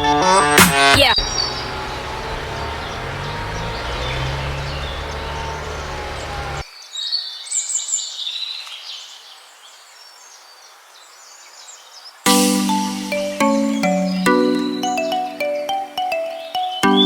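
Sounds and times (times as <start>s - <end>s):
birds chirping: 0.0s - 10.6s, 11.2s - 17.0s
mallet percussion music: 12.3s - 17.0s.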